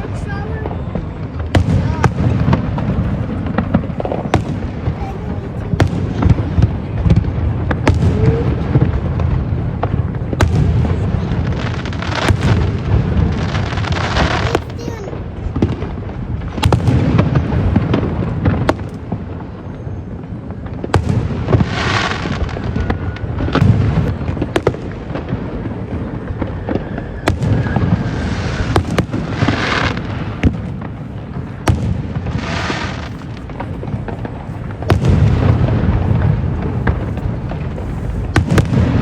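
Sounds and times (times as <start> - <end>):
fireworks hissing bursts: 0.0 - 9.0, 10.9 - 15.8, 26.4 - 39.0
low rumble of echoing booms: 0.0 - 14.5, 15.1 - 39.0
fireworks sharp bangs: 0.0 - 39.0.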